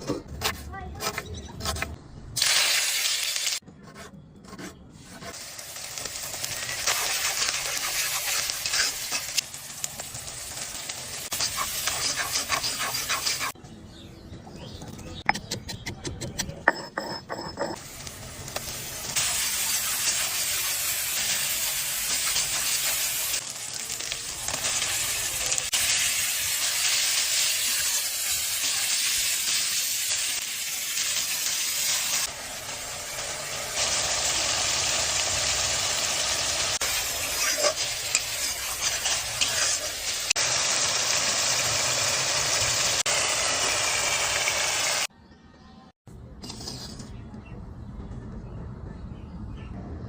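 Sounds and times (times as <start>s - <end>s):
chicken sizzling in hot oil: 2.4s - 3.6s, 5.4s - 13.6s, 17.8s - 45.1s.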